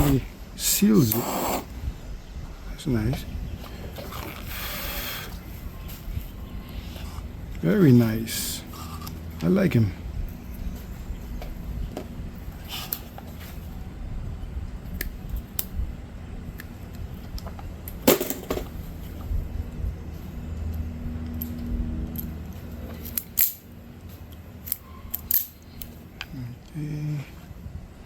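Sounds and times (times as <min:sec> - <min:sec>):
low steady hum: 0:00.0 - 0:28.0
small tools clicking and clinking: 0:20.7 - 0:26.3.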